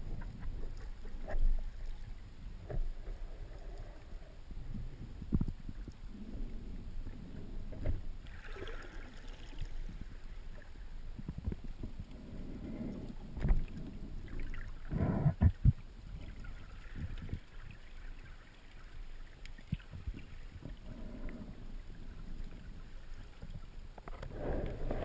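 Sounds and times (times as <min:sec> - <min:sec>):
water washing underwater: 0:06.1 - 0:10.7.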